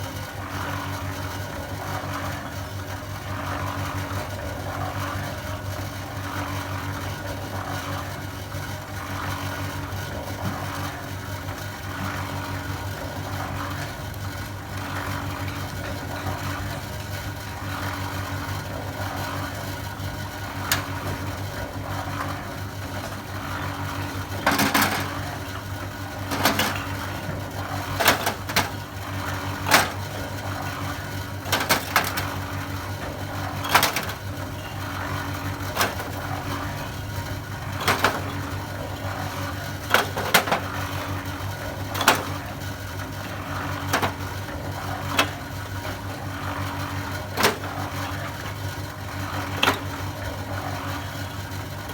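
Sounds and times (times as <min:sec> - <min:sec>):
concrete mixer motor hum: 0:00.0 - 0:51.9
mixer knocking and clattering: 0:18.6 - 0:51.9.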